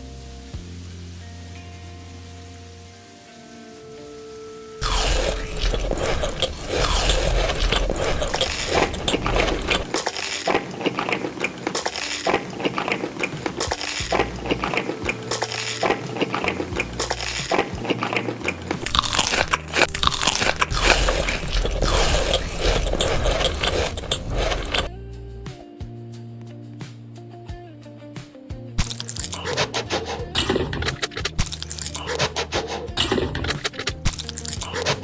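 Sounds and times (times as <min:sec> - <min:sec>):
crunching and chewing food: 0:04.8 - 0:24.9, 0:28.8 - 0:35.0.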